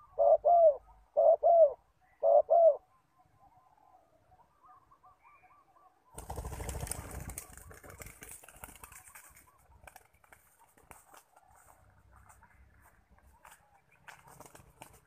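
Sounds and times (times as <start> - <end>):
dove cooing: 0.0 - 8.0
wings flapping and rustling: 6.2 - 12.5, 13.4 - 15.0.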